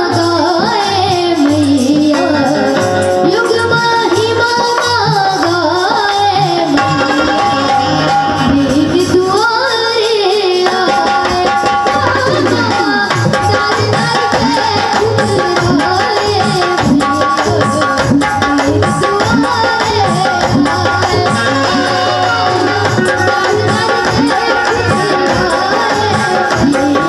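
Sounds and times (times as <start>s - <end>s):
hand drum with bending bass: 10.7s - 27.0s.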